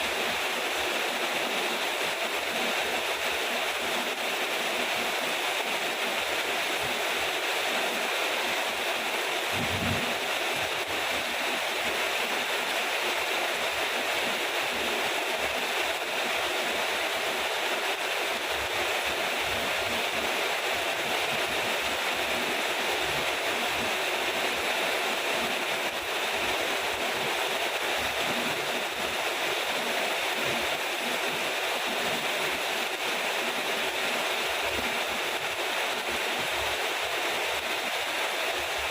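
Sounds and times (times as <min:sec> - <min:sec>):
heavy rain: 0:00.0 - 0:38.9
low thump: 0:09.5 - 0:10.2.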